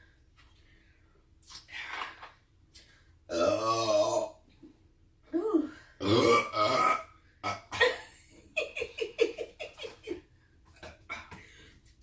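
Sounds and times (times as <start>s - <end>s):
people belching loudly: 3.3s - 4.3s, 6.0s - 7.0s.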